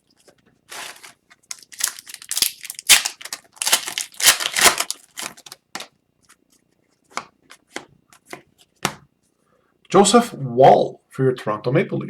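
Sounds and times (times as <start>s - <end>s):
cards being handled: 0.2s - 9.0s
wrapper crinkling: 0.7s - 5.7s.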